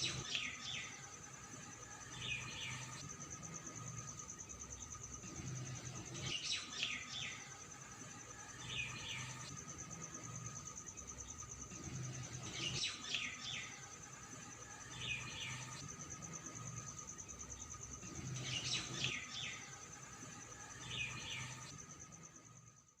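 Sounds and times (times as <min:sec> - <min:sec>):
birds chirping: 0:08.4 - 0:21.8.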